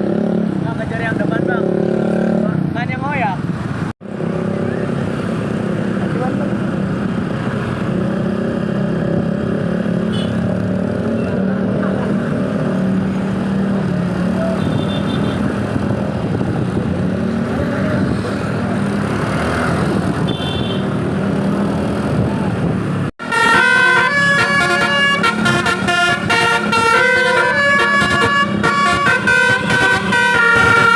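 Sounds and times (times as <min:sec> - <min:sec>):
road traffic: 0:00.0 - 0:30.9
bus horn playing melody: 0:23.2 - 0:30.9.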